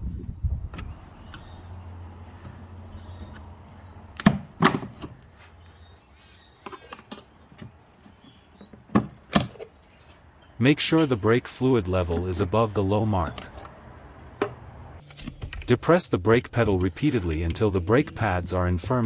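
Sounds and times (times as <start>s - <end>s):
low steady hum: 10.6s - 19.0s.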